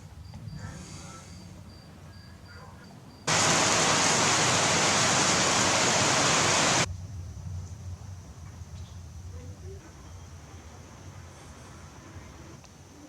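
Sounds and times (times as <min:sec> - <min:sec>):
storm rushing hiss: 0:03.3 - 0:08.4.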